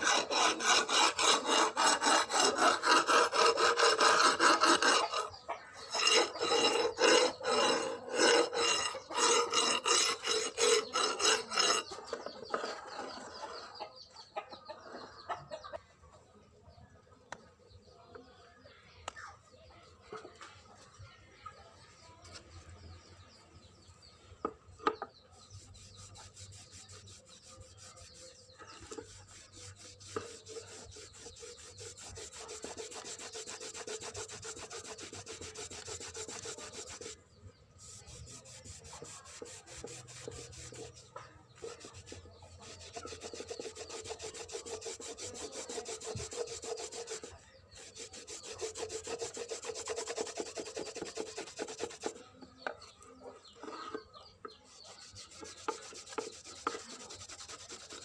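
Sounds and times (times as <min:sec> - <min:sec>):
abrasive scraping: 0:00.0 - 0:13.7.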